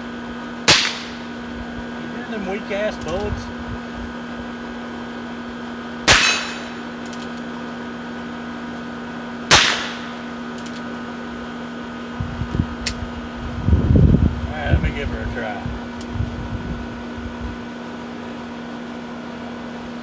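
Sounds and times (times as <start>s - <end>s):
air conditioner hum: 0.0s - 20.0s
revolver gunshots: 0.7s - 1.2s, 6.0s - 6.8s, 9.5s - 10.3s.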